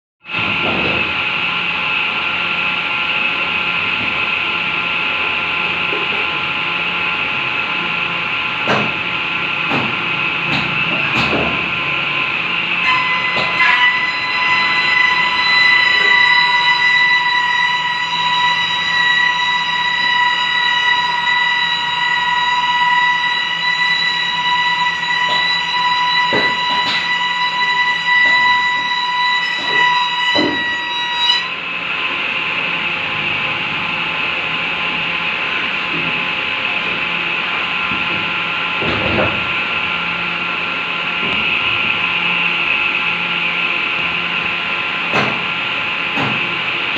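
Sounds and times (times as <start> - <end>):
woodworking machine motor whine: 0.3 - 46.9.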